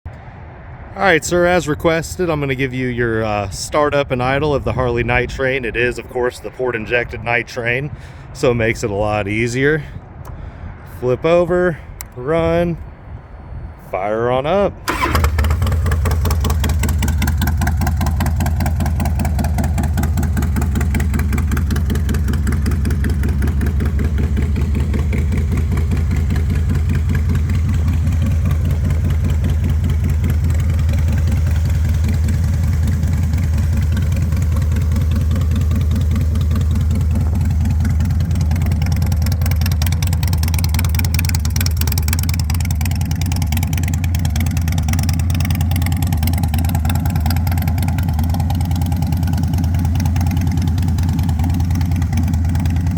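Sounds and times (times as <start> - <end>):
motorcycle engine idling: 14.9 - 52.9.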